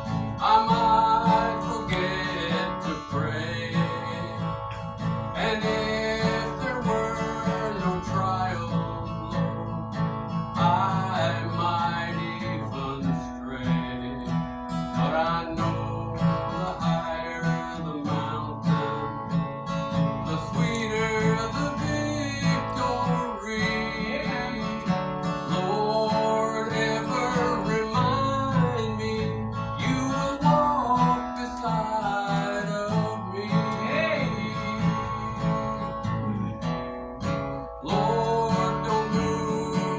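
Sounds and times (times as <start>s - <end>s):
acoustic guitar strumming: 0.0s - 39.9s.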